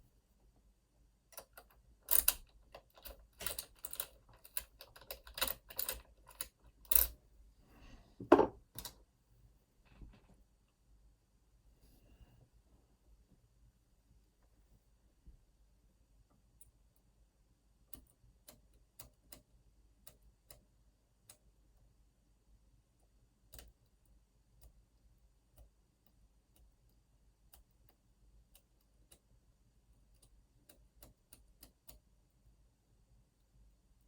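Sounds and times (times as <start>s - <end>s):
lock pick clicking in lock: 1.4s - 7.1s.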